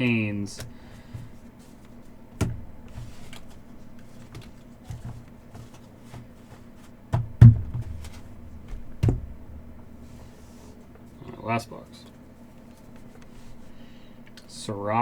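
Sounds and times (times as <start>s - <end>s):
cards handled on tabletop: 0.6s - 6.9s
loud thumps: 2.4s - 3.2s, 7.1s - 10.0s.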